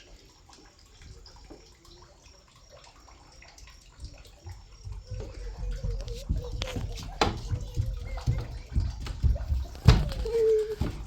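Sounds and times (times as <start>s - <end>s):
water trickling and dripping: 0.0s - 11.0s.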